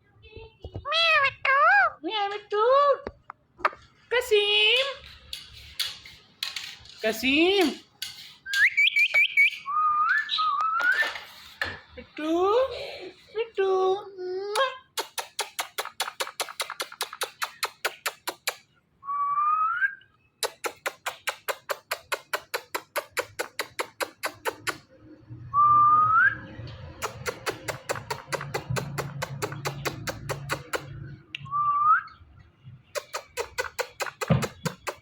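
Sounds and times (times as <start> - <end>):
parrot rising whistle: 8.5 - 11.1, 19.0 - 20.1, 25.5 - 26.6
parrot rapid clicks: 14.9 - 18.7, 20.4 - 24.8, 27.0 - 30.9, 33.0 - 35.0.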